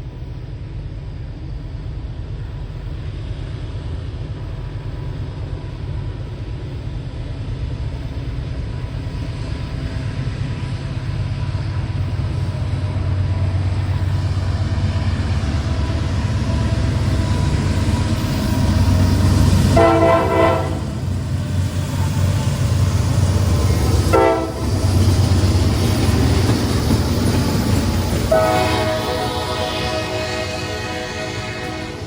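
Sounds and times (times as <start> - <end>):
diesel locomotive rumbling: 0.0 - 32.0
multi-note air horn: 19.8 - 21.0, 24.1 - 24.6, 28.3 - 32.0.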